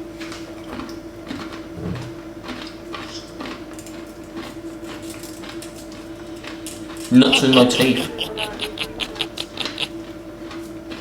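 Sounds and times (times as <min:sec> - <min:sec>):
chewing with crunching clicks: 0:00.0 - 0:11.0
steady low hum: 0:07.1 - 0:10.1.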